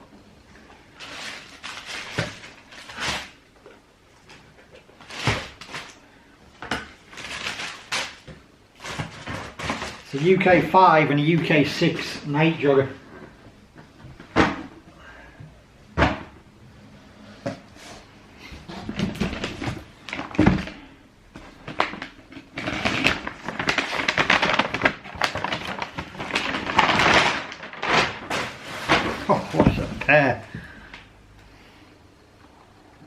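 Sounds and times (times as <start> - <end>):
packaging rustling: 0.8 - 3.4, 4.2 - 6.0, 6.7 - 10.7, 18.7 - 31.0.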